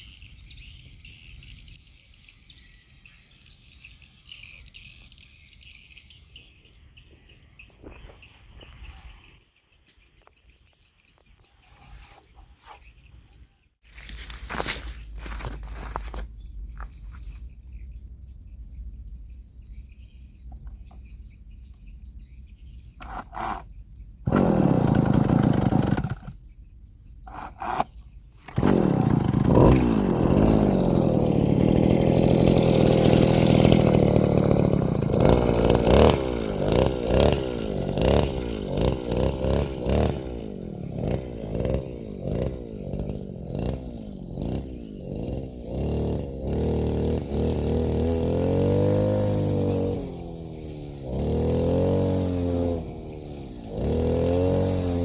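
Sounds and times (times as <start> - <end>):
small motor running: 23.0 - 23.7, 24.3 - 26.4, 27.3 - 55.0.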